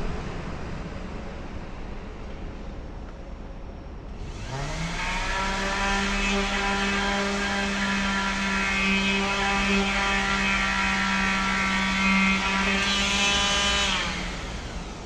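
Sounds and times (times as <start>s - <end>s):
power sander on metal: 4.2s - 15.0s.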